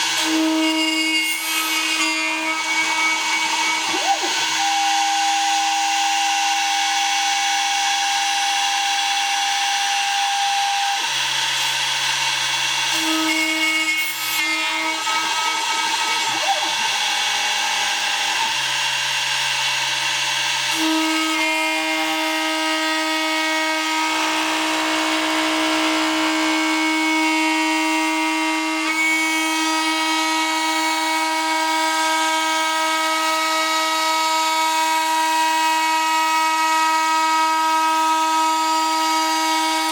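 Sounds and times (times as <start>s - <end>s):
cnc router whine: 0.0s - 39.9s.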